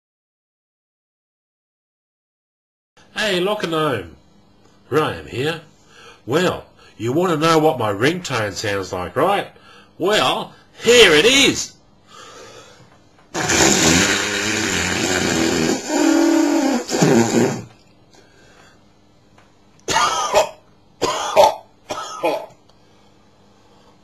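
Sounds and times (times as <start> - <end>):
long fart: 13.3 - 17.8
short coughs: 19.9 - 22.6.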